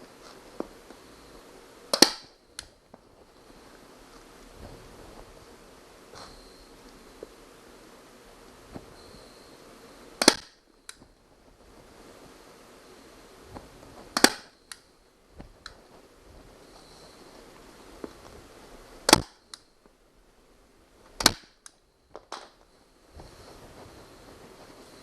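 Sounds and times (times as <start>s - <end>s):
staple gun snapping: 1.9s - 2.7s, 10.2s - 11.0s, 14.2s - 14.8s, 19.1s - 19.6s, 21.2s - 22.5s.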